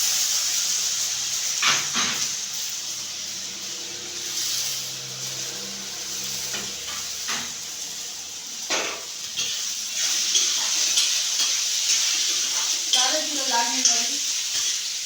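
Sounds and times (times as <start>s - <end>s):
potatoes sizzling in hot oil: 0.0s - 15.0s
spoon scraping a pan: 8.6s - 13.2s.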